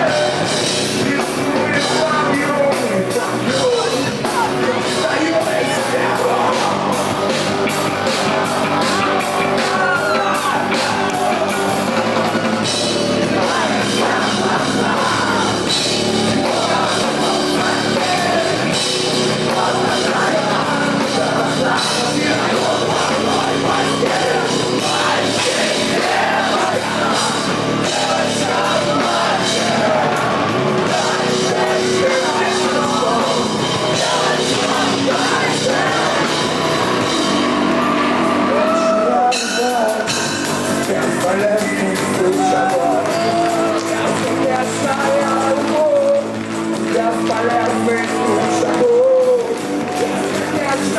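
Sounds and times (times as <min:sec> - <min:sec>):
person singing and shouting: 0:00.0 - 0:12.4, 0:40.8 - 0:49.7
drums: 0:00.0 - 0:50.9
rock band playing live: 0:00.0 - 0:50.9.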